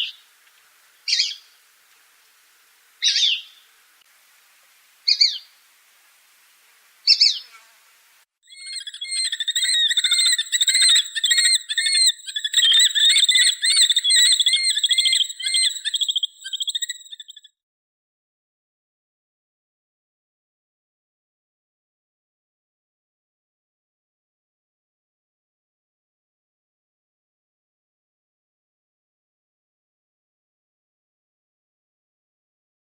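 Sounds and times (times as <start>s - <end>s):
hawk calling: 1.0s - 1.6s, 3.0s - 3.9s, 5.0s - 5.7s, 6.6s - 17.5s.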